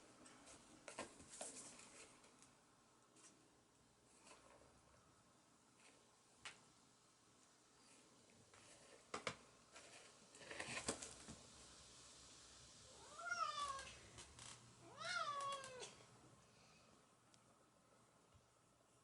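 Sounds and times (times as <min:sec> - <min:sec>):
cat meowing: 0:12.9 - 0:14.0, 0:14.8 - 0:16.0.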